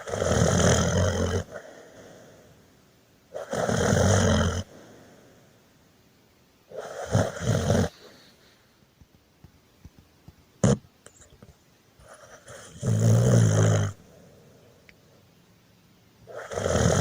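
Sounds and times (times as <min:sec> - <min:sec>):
person snoring: 0:00.0 - 0:02.5, 0:03.4 - 0:05.0, 0:06.7 - 0:08.2, 0:12.2 - 0:14.0, 0:16.3 - 0:17.0.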